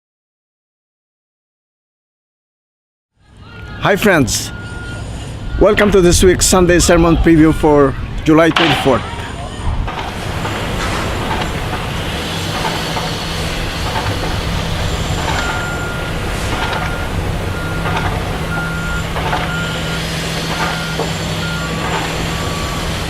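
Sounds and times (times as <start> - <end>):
construction machinery engine hum: 3.2 - 23.0
reversing alarm beeping: 3.6 - 23.0
lower-pitched reversing alarm: 4.4 - 7.8, 8.7 - 23.0
metallic clanks: 8.5 - 22.5.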